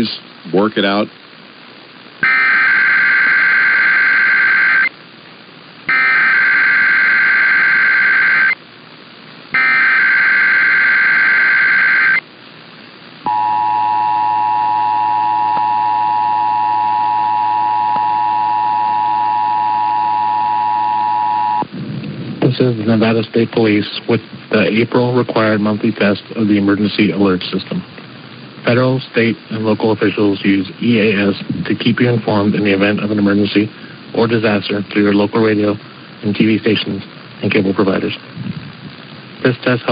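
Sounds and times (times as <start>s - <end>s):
digital data warble: 2.2s - 4.9s, 5.9s - 8.6s, 9.6s - 12.2s
two-tone attention signal: 2.2s - 4.9s, 5.9s - 8.6s, 9.6s - 12.2s, 13.3s - 21.6s.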